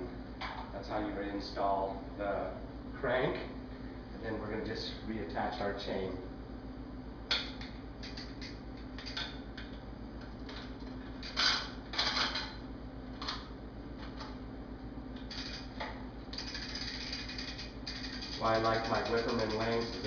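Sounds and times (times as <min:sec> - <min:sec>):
bicycle chain clatter: 0:15.3 - 0:15.7, 0:16.3 - 0:20.0
bicycle chain links clicking: 0:15.3 - 0:15.7, 0:16.3 - 0:20.0.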